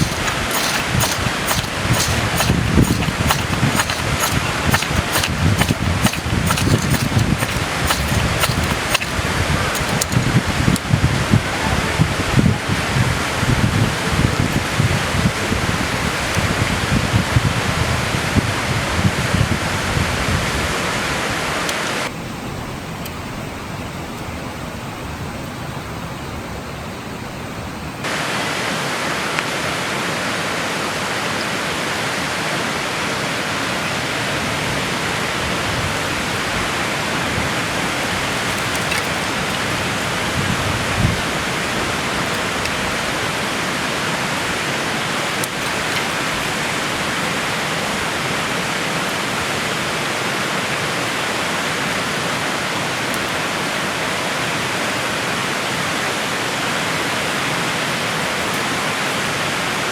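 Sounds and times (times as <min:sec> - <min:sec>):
river water rushing: 0:00.0 - 0:10.3, 0:28.1 - 0:59.9.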